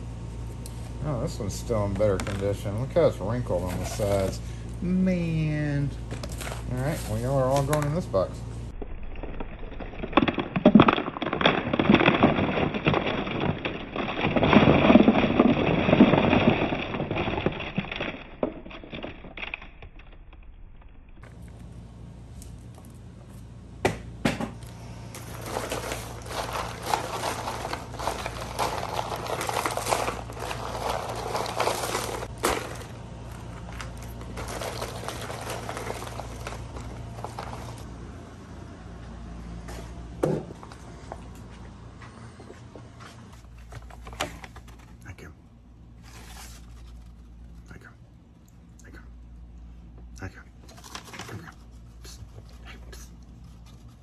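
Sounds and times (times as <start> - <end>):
packed items clicking and clattering: 0.6 - 4.6, 6.0 - 8.4, 9.6 - 21.6, 24.3 - 37.9, 43.4 - 45.3, 45.9 - 47.9, 50.6 - 54.0
packaging rustling and crinkling: 1.7 - 4.6, 6.1 - 8.3, 10.1 - 20.1, 25.1 - 37.9, 43.4 - 45.0, 46.0 - 47.6, 50.7 - 52.6.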